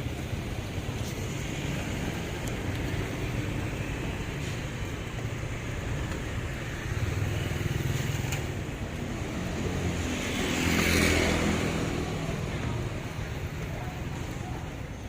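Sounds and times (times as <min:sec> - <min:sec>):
vehicle engines running: 0:00.0 - 0:15.0
vehicle passing: 0:06.4 - 0:13.2.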